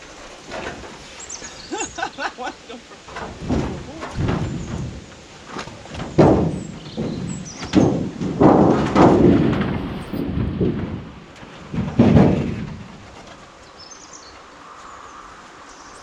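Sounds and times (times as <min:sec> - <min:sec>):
wooden boards thumping: 0:00.2 - 0:02.1, 0:02.9 - 0:13.4.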